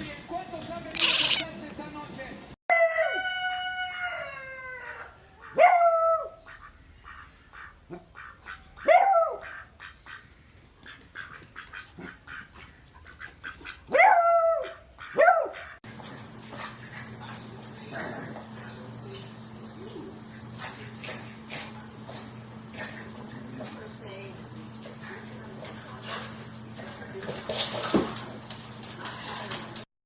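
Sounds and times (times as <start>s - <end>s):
dog barking high-pitched: 5.5s - 6.4s, 8.8s - 9.6s, 13.9s - 15.8s.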